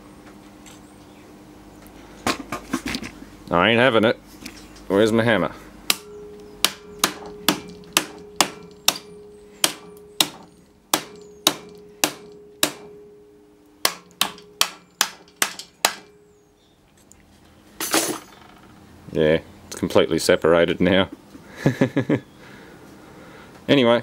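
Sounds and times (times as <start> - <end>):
hammer blows on metal: 5.9 - 13.2, 13.8 - 16.4.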